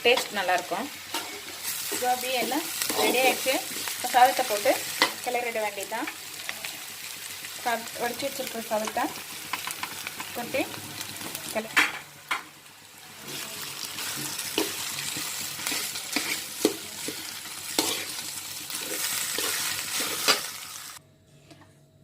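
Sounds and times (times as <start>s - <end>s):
food sizzling in a hot pan: 0.0s - 21.0s
spatula scraping and knocking pan: 14.1s - 20.5s.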